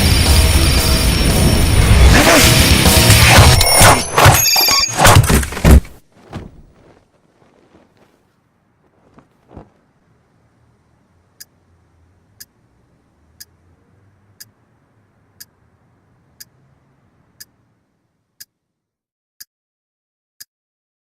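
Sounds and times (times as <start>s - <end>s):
faint low hum: 6.4s - 18.4s.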